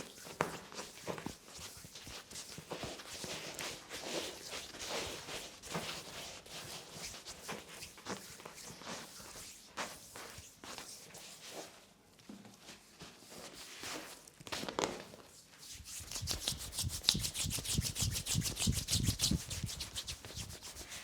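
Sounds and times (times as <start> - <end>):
hands rubbing over skin: 15.6 - 21.0.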